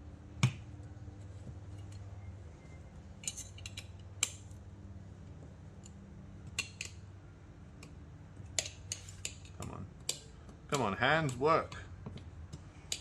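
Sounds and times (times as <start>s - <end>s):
low steady hum: 0.0s - 13.0s
metal tool clinking on screws: 3.2s - 4.4s.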